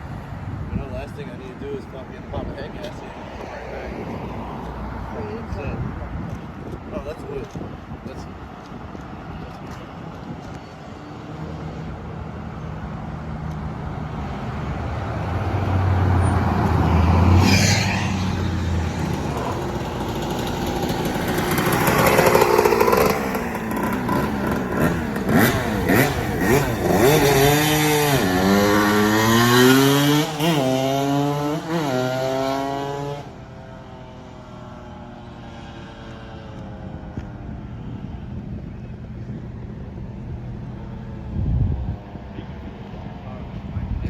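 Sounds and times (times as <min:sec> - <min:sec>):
two-stroke engine idling and revving: 0:18.1 - 0:38.6.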